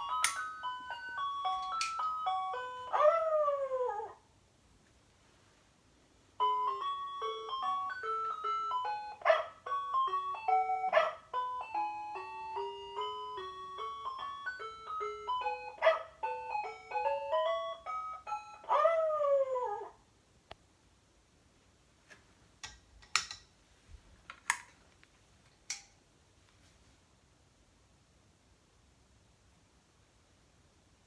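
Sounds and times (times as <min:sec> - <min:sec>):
electronic toy beeping tune: 0:06.4 - 0:18.7
dog bark sound effects: 0:09.2 - 0:09.6, 0:10.9 - 0:11.2, 0:15.8 - 0:16.1.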